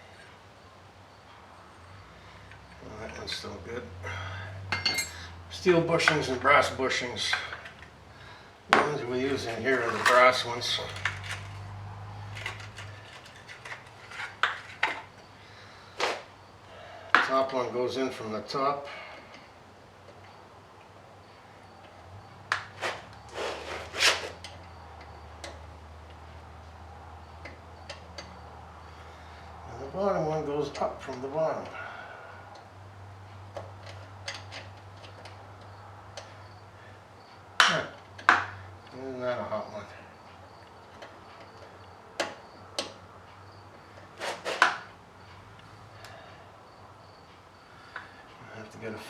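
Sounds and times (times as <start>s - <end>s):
light clicks of metal parts: 2.4s - 3.7s, 4.6s - 8.0s, 8.7s - 15.4s, 18.9s - 23.3s, 24.3s - 31.8s, 32.4s - 49.0s
metal parts and tools clinking: 4.7s - 5.3s, 8.8s - 15.1s
short scraping rustle: 9.3s - 15.1s, 15.9s - 16.3s, 22.7s - 24.6s, 44.0s - 44.9s.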